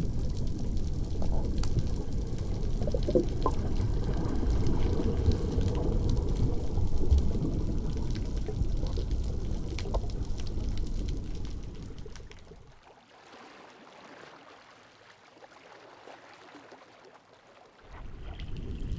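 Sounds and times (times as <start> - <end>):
low rumble: 0.0 - 12.7, 18.0 - 18.9
sea water sloshing and gurgling: 0.0 - 18.9.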